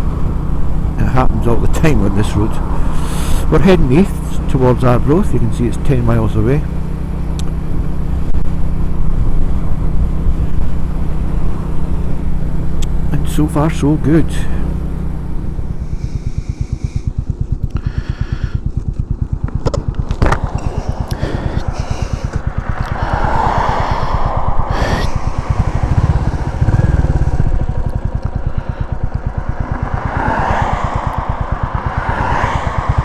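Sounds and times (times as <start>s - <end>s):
motorcycle engine cruising: 0.0s - 33.0s
wind noise: 15.6s - 33.0s.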